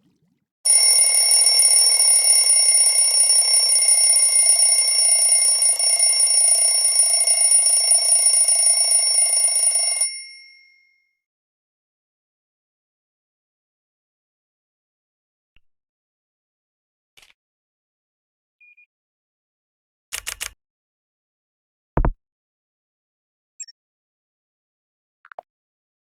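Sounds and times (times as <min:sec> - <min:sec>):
electronic phone tone: 0:00.7 - 0:10.8.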